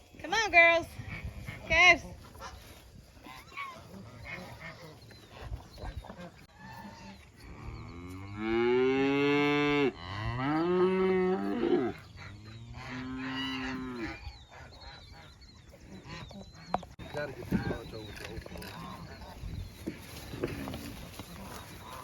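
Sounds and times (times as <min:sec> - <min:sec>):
cattle mooing: 0:06.9 - 0:12.0, 0:12.7 - 0:14.2.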